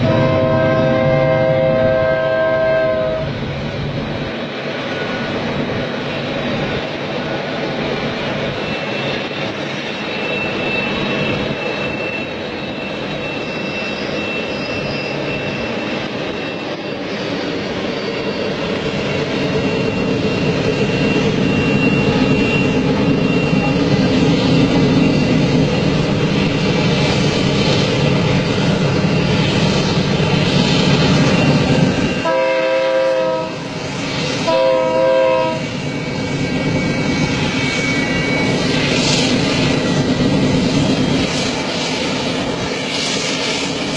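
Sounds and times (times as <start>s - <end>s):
train horn blasts: 0.0s - 3.3s, 32.1s - 33.8s, 34.4s - 35.7s
train rumbling past: 0.0s - 43.9s.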